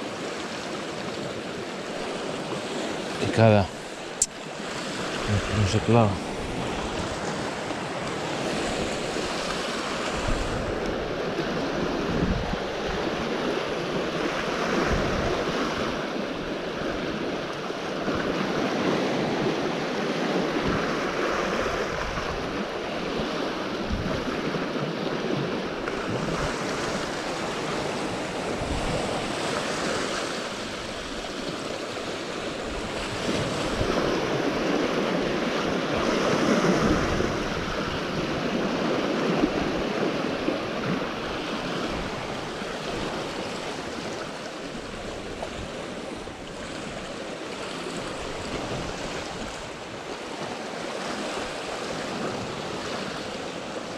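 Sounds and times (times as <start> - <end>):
sea waves washing ashore: 0.0 - 53.9
wind buffeting microphone: 4.6 - 47.2.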